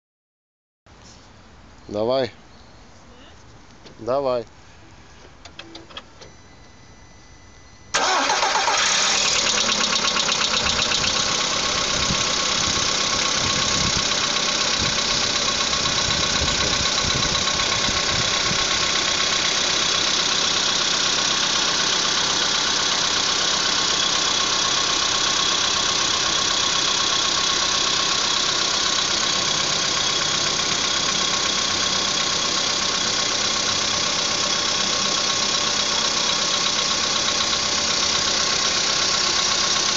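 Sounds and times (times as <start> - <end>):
car engine idling with knock: 9.4 - 39.9.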